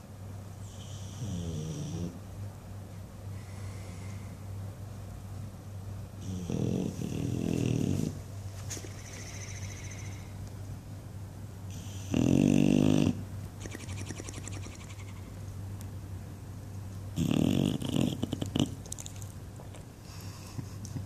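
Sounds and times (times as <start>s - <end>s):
dog snoring: 0.7s - 2.2s, 6.2s - 8.2s, 11.7s - 13.2s, 17.2s - 18.8s.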